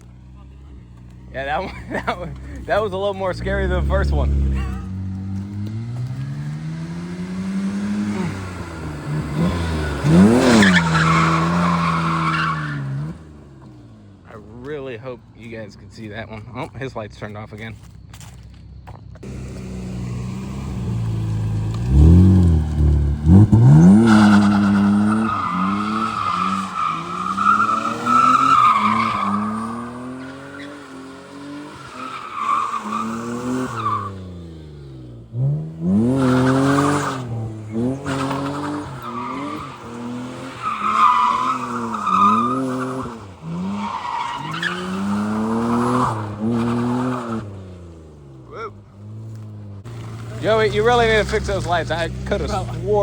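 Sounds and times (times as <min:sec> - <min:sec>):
car engine revving: 0:00.0 - 0:15.0, 0:19.2 - 0:53.0
tyres squealing: 0:07.9 - 0:13.1, 0:23.2 - 0:34.2, 0:36.0 - 0:47.6.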